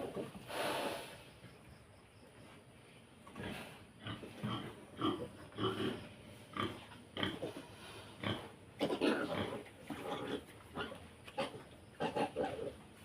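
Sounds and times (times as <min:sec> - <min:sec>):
pigs grunting and squealing: 0:03.4 - 0:07.6, 0:08.2 - 0:12.8.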